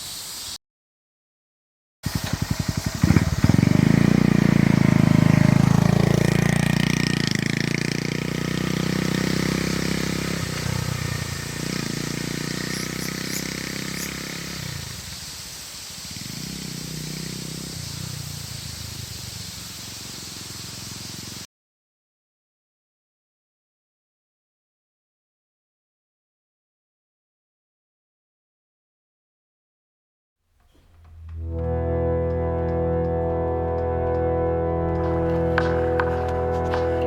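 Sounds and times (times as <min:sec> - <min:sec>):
motorcycle engine revving: 0:02.0 - 0:21.5, 0:30.6 - 0:37.0.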